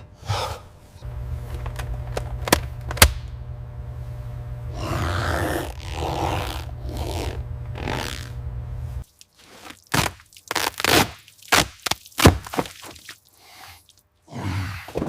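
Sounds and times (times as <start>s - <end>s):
low machine hum: 0.0s - 9.0s
sharp scrapes and cracks: 9.0s - 13.2s.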